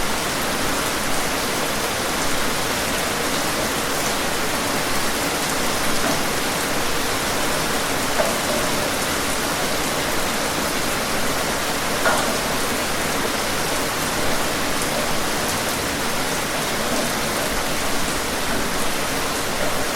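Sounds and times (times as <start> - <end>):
rain pattering on surfaces: 0.0 - 19.9.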